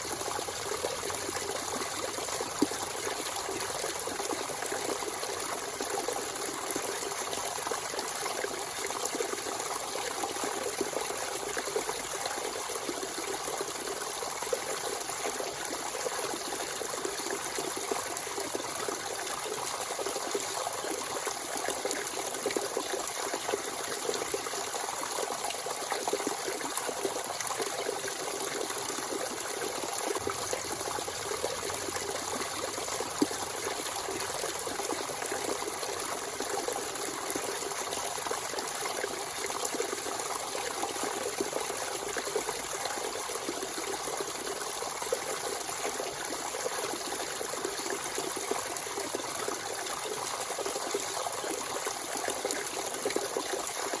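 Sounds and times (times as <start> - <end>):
spring water trickling: 23.2 - 42.8.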